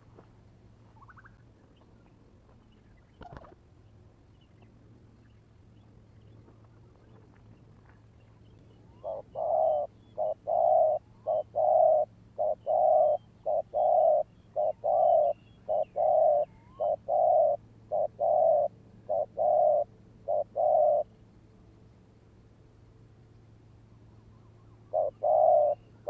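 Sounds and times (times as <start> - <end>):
dove cooing: 8.9 - 21.1, 24.9 - 26.0.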